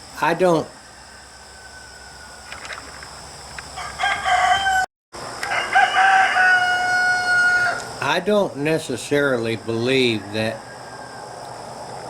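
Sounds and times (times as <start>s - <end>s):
rooster crowing: 0.7s - 3.0s, 3.8s - 8.0s, 9.9s - 11.6s.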